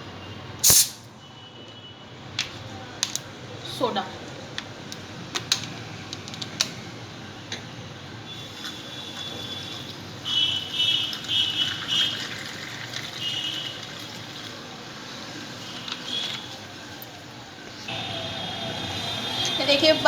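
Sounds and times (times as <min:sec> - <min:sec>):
soda water pouring and fizzing: 0:08.3 - 0:15.7.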